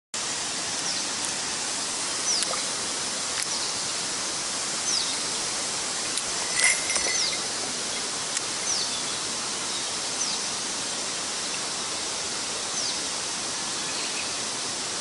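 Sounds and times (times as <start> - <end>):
mountain stream rushing: 0.2 - 15.0
bird high falling calls: 6.4 - 9.2.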